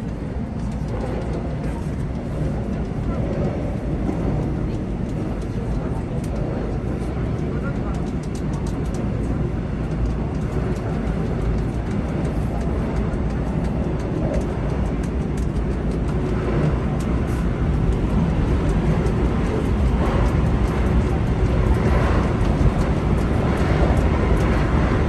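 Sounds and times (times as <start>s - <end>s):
train wheels rumbling on rail: 0.0s - 25.0s.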